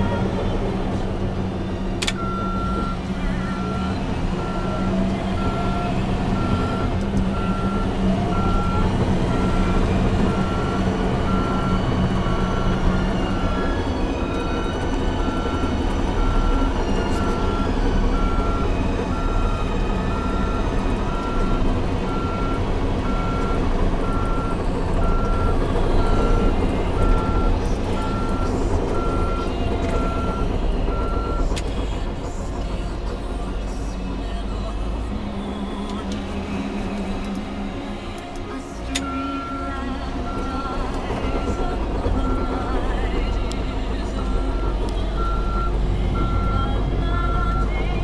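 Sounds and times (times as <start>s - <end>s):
bulldozer diesel engine running: 0.0s - 48.0s
backup alarm beeping: 2.0s - 31.5s.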